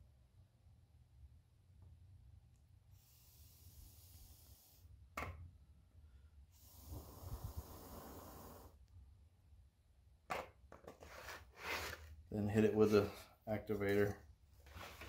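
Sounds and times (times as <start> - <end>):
breathing through nose: 6.6 - 8.8.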